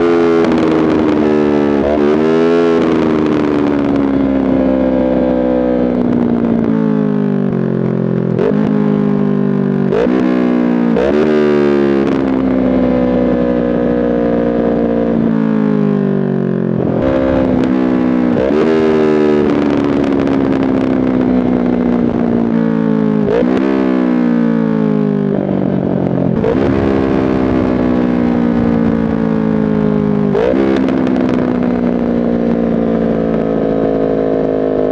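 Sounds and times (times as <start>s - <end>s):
exhaust pops and crackles: 0.0s - 4.5s, 26.2s - 34.9s
motorcycle engine revving: 0.0s - 34.9s.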